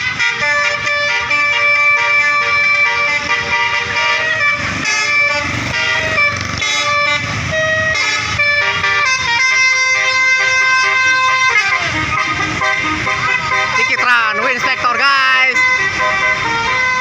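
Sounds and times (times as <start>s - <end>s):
multi-tone air horn tune: 0.0s - 17.0s.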